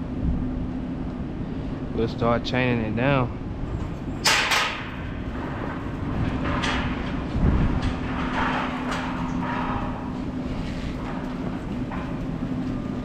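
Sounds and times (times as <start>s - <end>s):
gear scraping and clanking: 3.6s - 13.0s.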